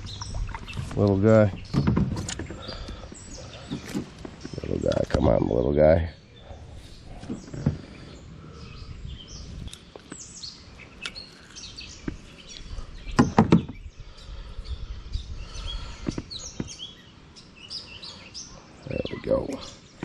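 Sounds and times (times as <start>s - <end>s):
birds chirping: 0.0s - 20.0s
sharp knocks: 13.2s - 13.8s.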